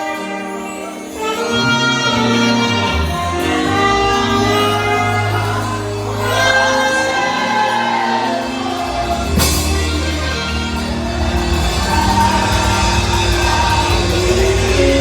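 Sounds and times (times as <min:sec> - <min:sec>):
band playing worship music: 0:00.0 - 0:15.0
saxophone playing held notes: 0:00.0 - 0:15.0
voices singing along: 0:00.0 - 0:15.0
deep bass line: 0:01.5 - 0:07.0, 0:08.6 - 0:15.0.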